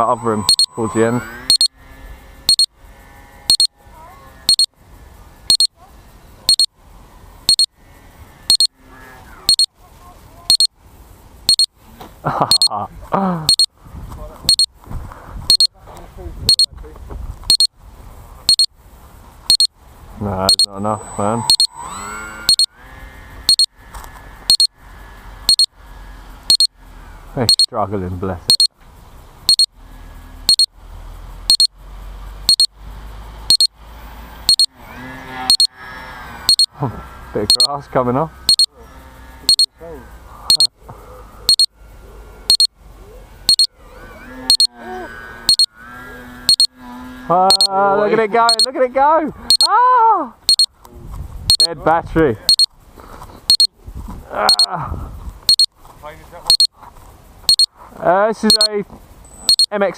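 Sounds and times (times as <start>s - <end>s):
electronic beeper double pips: 0.0s - 1.7s, 2.5s - 2.7s, 3.5s - 3.7s, 4.5s - 4.7s, 5.5s - 5.7s, 6.5s - 6.7s, 7.5s - 7.7s, 8.5s - 8.7s, 9.5s - 9.7s, 10.5s - 10.7s, 11.5s - 11.7s, 12.5s - 12.8s, 13.5s - 13.7s, 14.5s - 14.7s, 15.5s - 15.7s, 16.5s - 16.7s, 17.5s - 17.7s, 18.5s - 18.7s, 19.5s - 19.7s, 20.4s - 22.7s, 23.5s - 23.7s, 24.5s - 24.7s, 25.5s - 25.7s, 26.5s - 26.7s, 27.5s - 27.7s, 28.5s - 28.7s, 29.5s - 29.7s, 30.5s - 30.7s, 31.5s - 31.7s, 32.5s - 32.7s, 33.5s - 33.8s, 34.5s - 34.7s, 35.5s - 35.7s, 36.5s - 36.7s, 37.5s - 37.8s, 38.5s - 38.7s, 39.5s - 39.7s, 40.5s - 40.7s, 41.5s - 41.7s, 42.5s - 42.7s, 43.5s - 43.7s, 44.5s - 44.8s, 45.5s - 45.7s, 46.5s - 46.7s, 47.5s - 47.8s, 48.4s - 48.7s, 49.5s - 49.7s, 50.5s - 50.7s, 51.5s - 51.7s, 52.5s - 52.7s, 53.5s - 53.7s, 54.5s - 54.7s, 55.5s - 55.7s, 56.5s - 56.7s, 57.5s - 57.7s, 58.5s - 58.8s, 59.4s - 59.8s
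faint background hiss: 0.0s - 59.9s.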